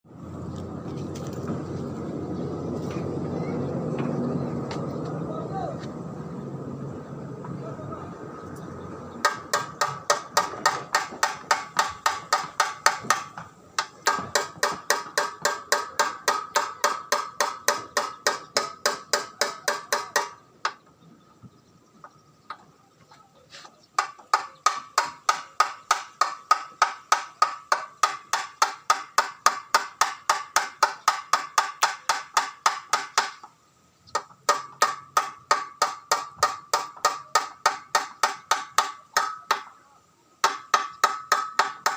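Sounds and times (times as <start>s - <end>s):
hammer striking metal: 9.2s - 20.8s, 24.0s - 33.5s, 34.2s - 39.8s, 40.4s - 41.9s.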